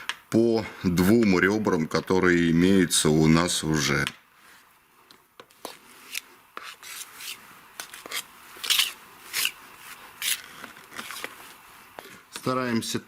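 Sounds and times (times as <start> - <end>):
spatula scraping plaster on wall: 6.1 - 10.7.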